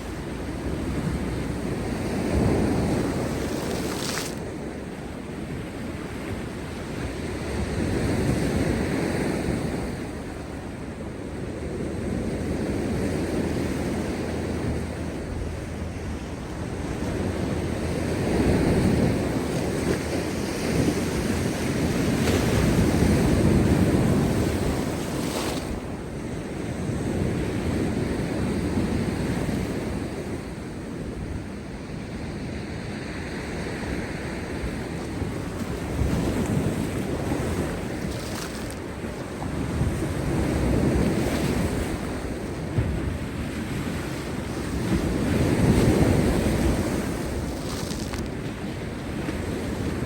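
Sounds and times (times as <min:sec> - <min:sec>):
waves breaking on rocks: 0:00.0 - 0:10.8, 0:11.8 - 0:31.3, 0:33.2 - 0:50.0
wind buffeting microphone: 0:00.0 - 0:50.0.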